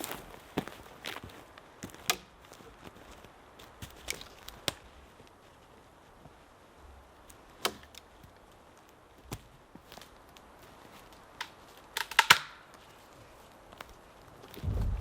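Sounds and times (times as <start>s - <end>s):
sharp snaps and clicks: 11.4s - 12.8s.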